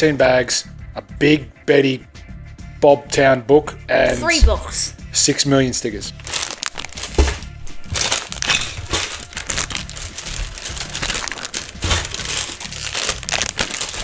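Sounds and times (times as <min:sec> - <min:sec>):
plastic bags crinkling: 0:06.1 - 0:14.0.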